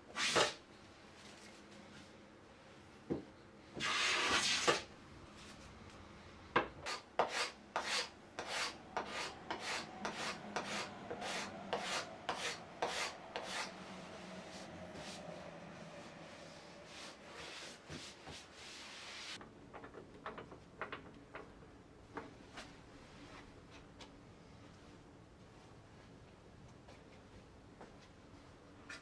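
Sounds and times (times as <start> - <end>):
hand tool rasping on wood: 6.8 - 13.7.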